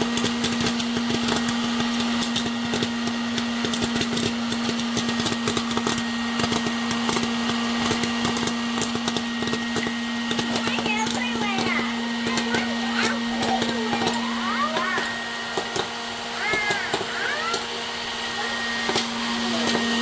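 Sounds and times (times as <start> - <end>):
popcorn kernels popping: 0.0 - 17.9, 18.8 - 20.0
popcorn maker motor hum: 0.0 - 20.0.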